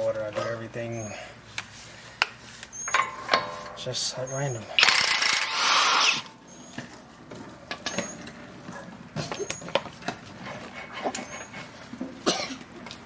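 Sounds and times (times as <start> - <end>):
metallic clinks and knocks of tools: 2.8 - 3.9.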